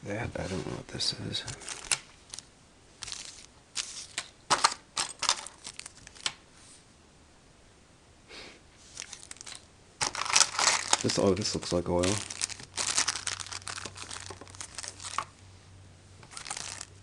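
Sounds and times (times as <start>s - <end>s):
packets crinkling and rustling: 1.4s - 6.4s, 8.9s - 15.4s, 16.2s - 17.0s.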